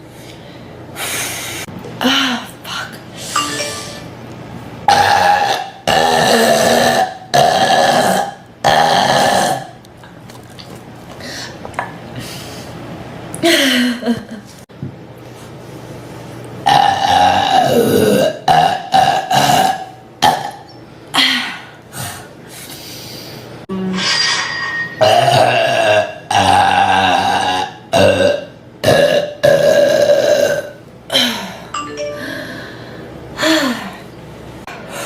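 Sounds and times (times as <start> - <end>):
woman burping: 16.7 - 20.6, 25.0 - 30.7.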